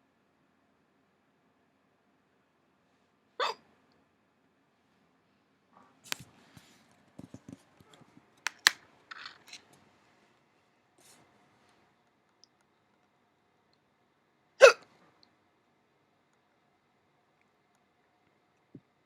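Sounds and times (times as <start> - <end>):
person hiccuping: 3.4 - 3.6, 14.6 - 14.8.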